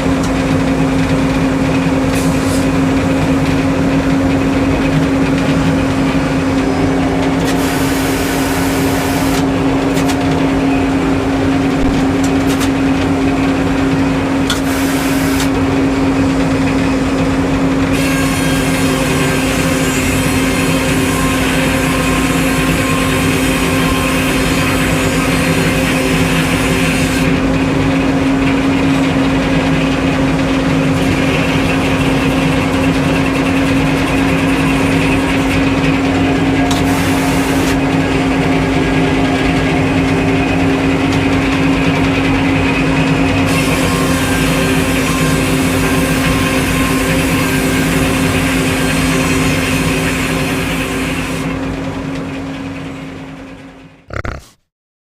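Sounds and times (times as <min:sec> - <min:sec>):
sawmill engine running: 0:00.0 - 0:54.2
saw cutting through wood: 0:05.5 - 0:10.1, 0:14.5 - 0:15.6, 0:17.9 - 0:27.4, 0:43.4 - 0:51.5.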